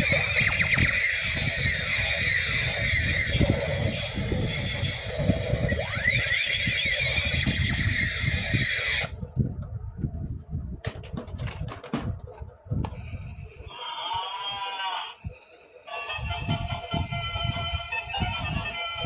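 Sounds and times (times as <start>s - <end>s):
electronic toy gliding tones: 0.0s - 9.2s, 13.0s - 19.0s
warbling electronic sound: 0.0s - 9.3s.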